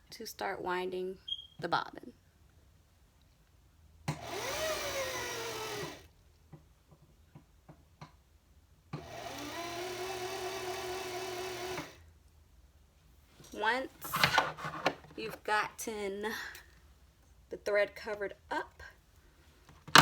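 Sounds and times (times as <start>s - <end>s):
sewing machine motor whine: 4.2s - 6.0s, 9.0s - 12.0s.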